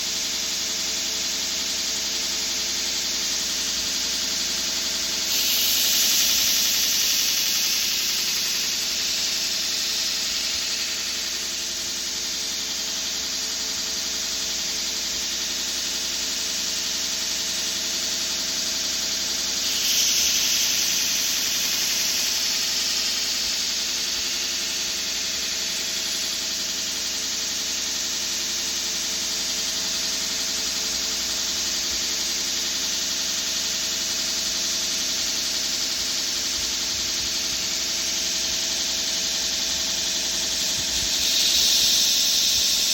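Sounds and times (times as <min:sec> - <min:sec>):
grinder sharpening knife blade: 0:19.6 - 0:23.2, 0:40.8 - 0:42.9.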